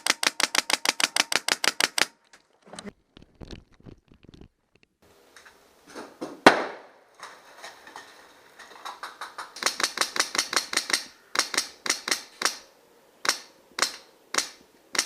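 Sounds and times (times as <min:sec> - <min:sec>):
airsoft gun shots: 0:06.4 - 0:07.0.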